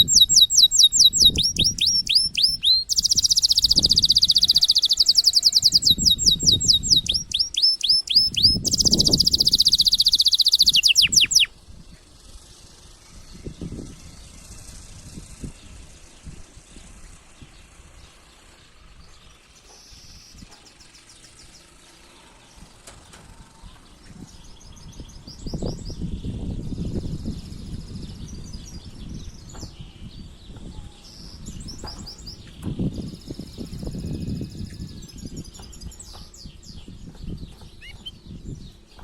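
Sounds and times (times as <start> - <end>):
canary singing high trills: 0.0 - 11.6, 37.7 - 38.3.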